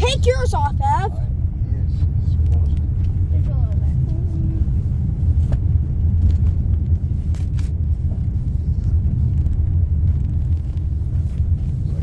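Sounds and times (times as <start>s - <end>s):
car driving over rough track: 0.0s - 12.0s.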